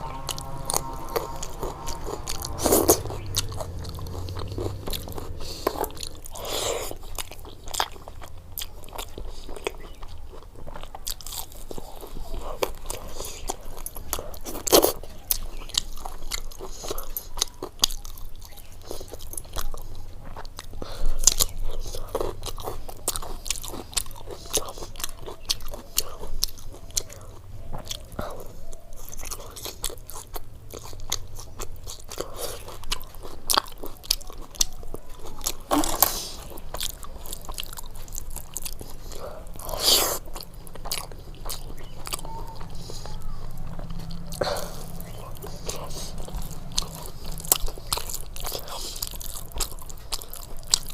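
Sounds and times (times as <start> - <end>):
loud bites: 0.0 - 7.0
person chewing and crunching: 0.0 - 50.9.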